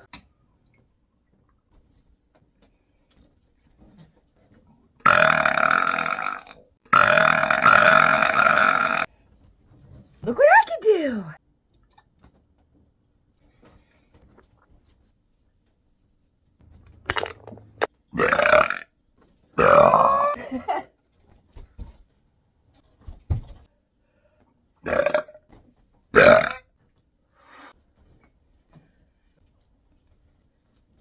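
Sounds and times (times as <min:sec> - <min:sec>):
woman burping: 0:19.6 - 0:20.9, 0:24.9 - 0:25.4, 0:26.2 - 0:26.6.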